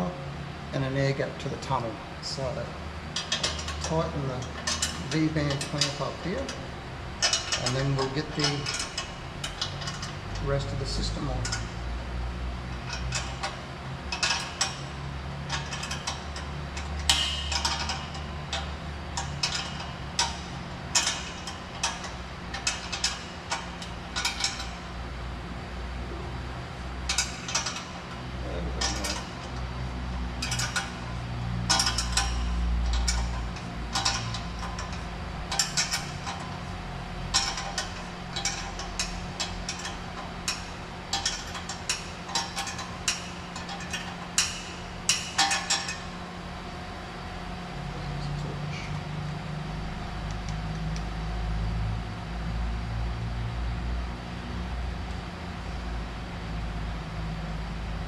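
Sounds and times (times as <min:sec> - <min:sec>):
steady low hum: 0:00.0 - 0:58.0
metal tools clinking: 0:07.2 - 0:11.7, 0:28.7 - 0:29.6, 0:30.4 - 0:31.1, 0:31.7 - 0:46.1.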